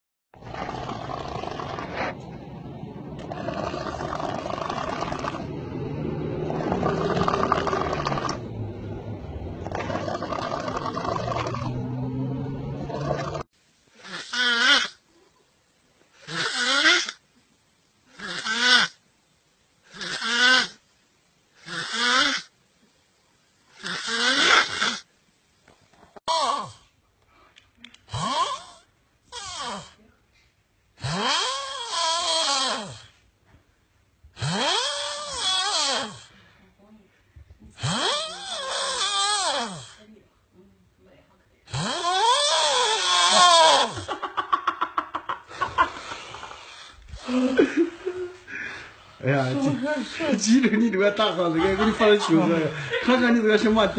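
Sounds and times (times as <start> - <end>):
loud rasping snoring: 0.4 - 2.3, 3.2 - 15.0, 16.2 - 17.2, 18.2 - 19.0, 19.9 - 20.8, 21.6 - 22.5, 23.8 - 25.1, 28.1 - 30.0, 31.0 - 33.2, 34.4 - 36.3, 37.7 - 40.0, 41.7 - 44.1.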